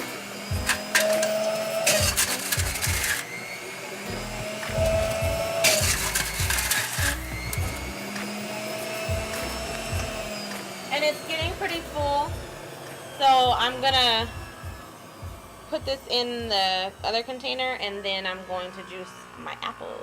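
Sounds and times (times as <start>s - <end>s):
grapes crunching in juicer: 0.0s - 15.8s
electric juicer running: 0.0s - 20.0s.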